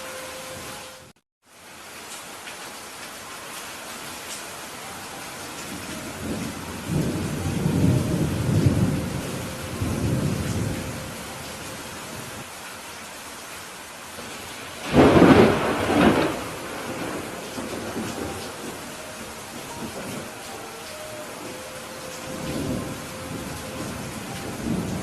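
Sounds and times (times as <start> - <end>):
steady rain: 0.0 - 25.0
rolling thunder rumble: 5.7 - 12.4, 14.8 - 25.0
sharp thunderclap: 14.8 - 18.8.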